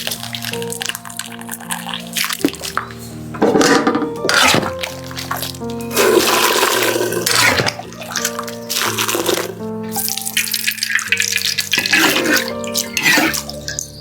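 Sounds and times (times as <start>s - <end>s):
background music sustained notes: 0.0s - 14.0s
water running in bursts: 4.7s - 13.5s.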